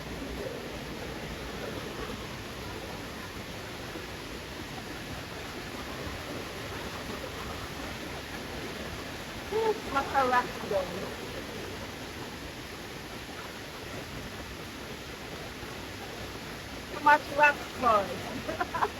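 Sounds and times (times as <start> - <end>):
waterfall rushing: 15.5 - 18.9.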